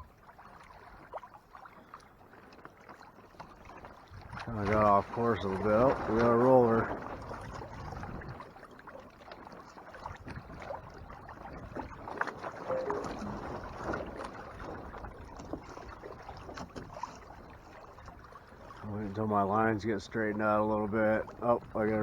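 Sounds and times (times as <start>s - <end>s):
water splashing against hull: 0.0s - 22.0s.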